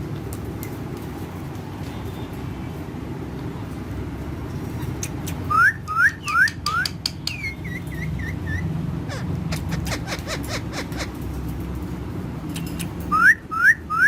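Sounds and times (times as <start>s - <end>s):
parrot whistling: 5.5s - 11.1s, 12.8s - 14.0s.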